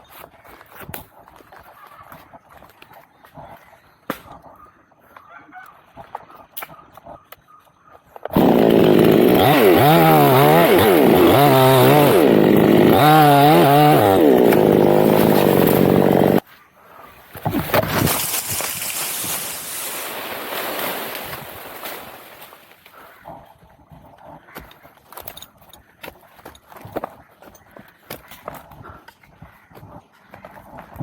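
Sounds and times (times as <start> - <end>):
chainsaw revving: 8.3 - 16.4
rustling: 17.4 - 22.8.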